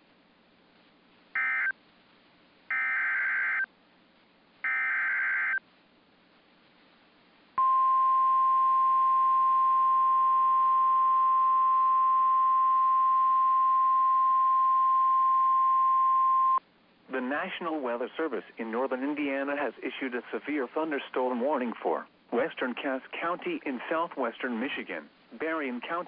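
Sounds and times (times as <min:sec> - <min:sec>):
steady warning alarm tone: 0:02.7 - 0:03.7.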